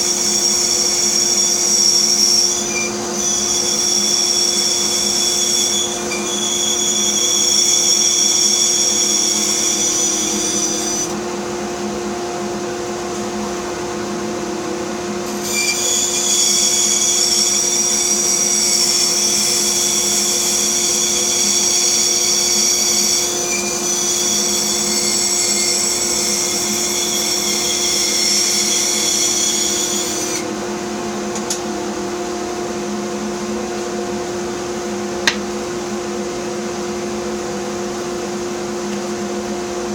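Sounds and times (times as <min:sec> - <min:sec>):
saw blade cutting wood whine: 0:00.0 - 0:11.3, 0:15.0 - 0:30.6
bandsaw motor hum: 0:00.0 - 0:36.3.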